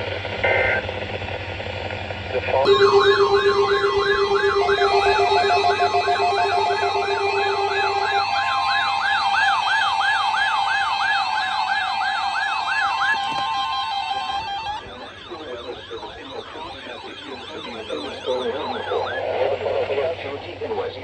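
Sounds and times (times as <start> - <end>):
steady alert tones: 2.7 - 10.1
electronic siren yelping: 2.7 - 19.3.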